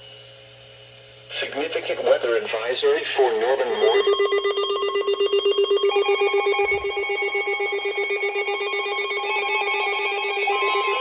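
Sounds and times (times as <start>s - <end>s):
high steady tones: 3.7s - 11.0s
pulsing buzzing alert tone: 3.7s - 11.0s.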